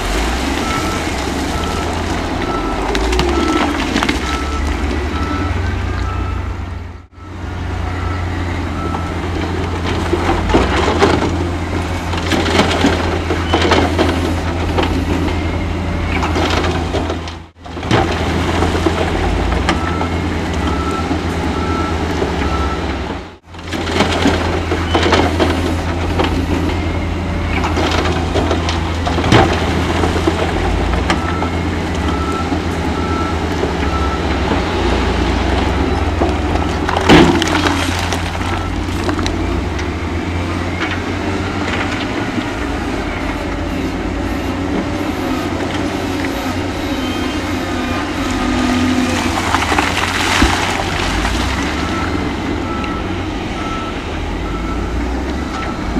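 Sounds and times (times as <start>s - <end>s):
diesel machinery engine drone: 0.0s - 55.9s
reversing alarm beeping: 0.5s - 10.6s, 19.3s - 23.0s, 31.0s - 41.7s, 42.3s - 49.6s, 51.6s - 55.9s
clanking and scraping stone: 35.6s - 39.8s, 48.2s - 51.9s.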